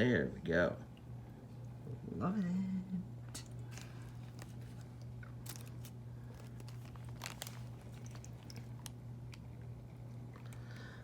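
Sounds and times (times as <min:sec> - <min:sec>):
steady low hum: 0:00.0 - 0:11.0
plastic bags crinkling: 0:03.4 - 0:09.7.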